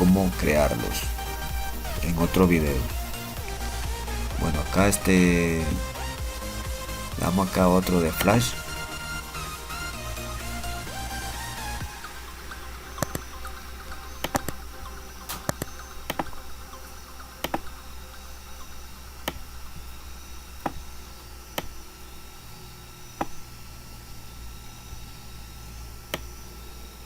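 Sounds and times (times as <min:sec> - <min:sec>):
low electrical hum: 0:00.0 - 0:27.0
computer mouse clicking: 0:14.2 - 0:14.6, 0:15.3 - 0:16.4, 0:17.4 - 0:17.7, 0:19.2 - 0:19.4.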